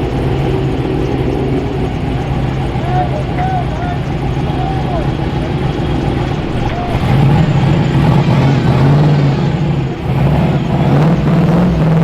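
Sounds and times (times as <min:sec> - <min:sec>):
engine running at raised speed: 0:00.0 - 0:12.0.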